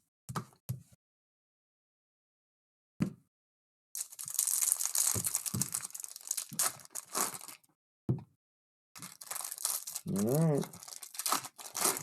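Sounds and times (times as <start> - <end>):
foil wrapper crinkling and tearing: 4.0 - 7.7, 9.0 - 12.0.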